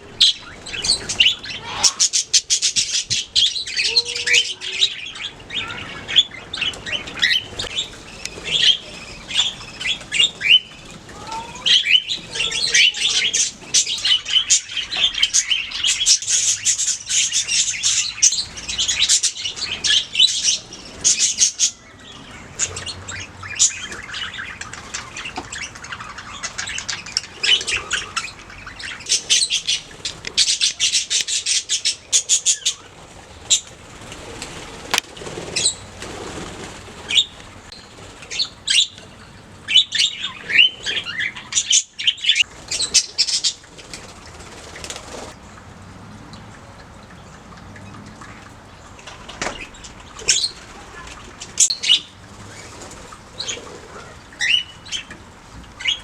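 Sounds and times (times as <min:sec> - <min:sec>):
budgerigars chirping: 0:00.2 - 0:32.9.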